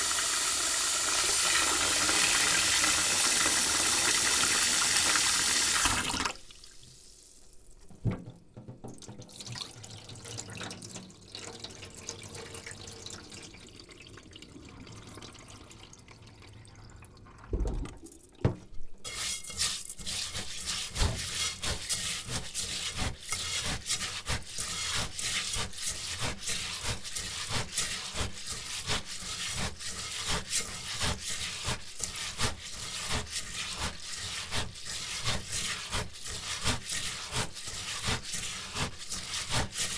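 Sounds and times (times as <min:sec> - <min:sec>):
knock: 0:07.9 - 0:09.2
water sloshing and dripping: 0:08.8 - 0:18.8
rice grains scrubbed by hand: 0:19.1 - 0:39.9.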